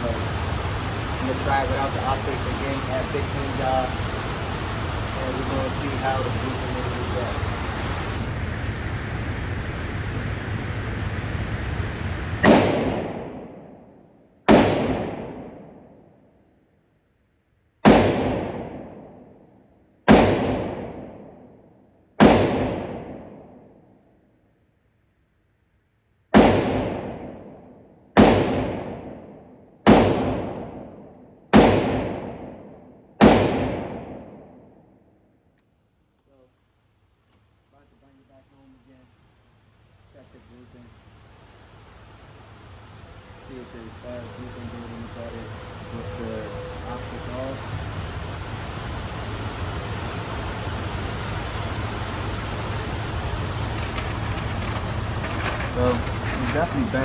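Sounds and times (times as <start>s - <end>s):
gunshots ringing out: 12.4s - 16.0s, 17.8s - 19.4s, 20.1s - 21.6s, 22.2s - 23.8s, 26.3s - 34.8s.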